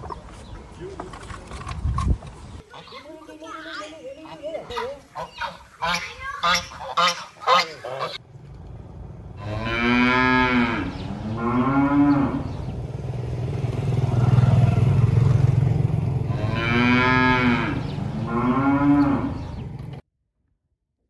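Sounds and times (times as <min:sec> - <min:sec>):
cow mooing: 0:09.4 - 0:12.7, 0:16.2 - 0:19.7.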